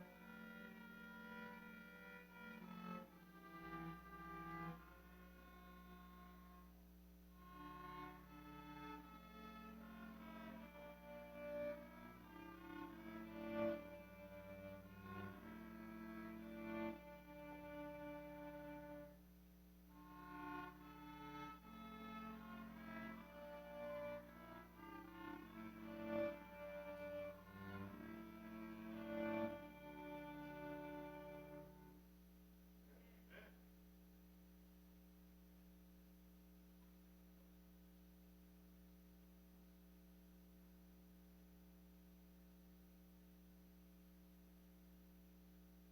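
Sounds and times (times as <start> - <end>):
soft string-like instrumental music: 0.0 - 19.2, 19.9 - 32.0.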